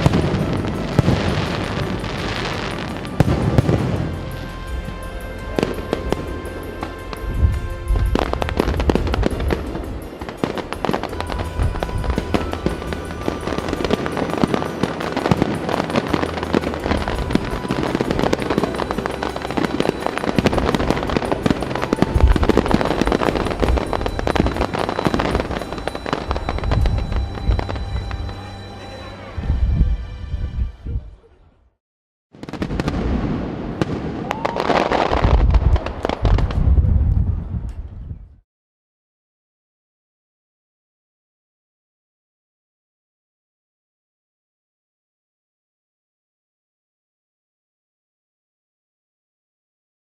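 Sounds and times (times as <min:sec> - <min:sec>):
fireworks booming: 0:00.0 - 0:28.8, 0:32.4 - 0:37.6
fireworks crackling: 0:00.0 - 0:29.3, 0:32.4 - 0:37.3
music: 0:00.0 - 0:31.8.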